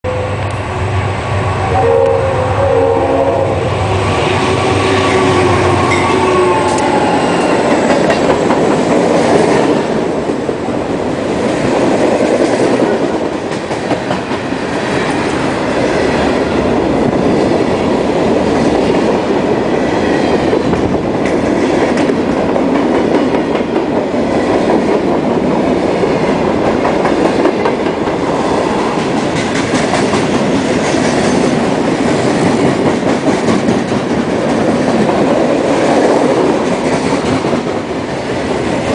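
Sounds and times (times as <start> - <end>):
locomotive horn: 0.1 - 0.6, 1.5 - 7.6
train wheels clattering over rail joints: 7.5 - 9.7.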